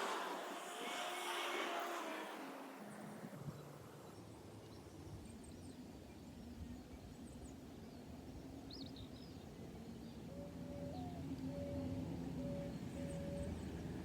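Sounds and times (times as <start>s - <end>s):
loud passing noise: 0.0s - 3.2s
faint high bird chirps: 10.0s - 14.0s.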